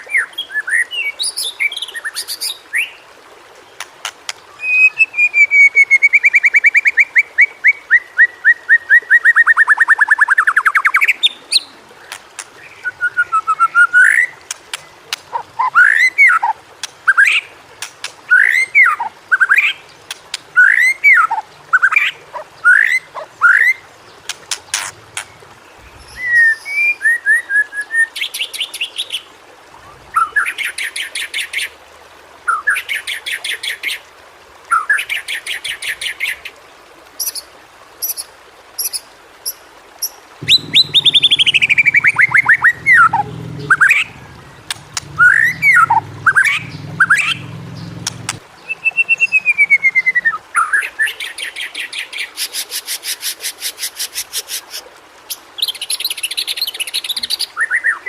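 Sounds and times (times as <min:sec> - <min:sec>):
bird singing: 0:24.7 - 0:28.3, 0:40.4 - 0:51.3
low hum: 0:40.4 - 0:48.4.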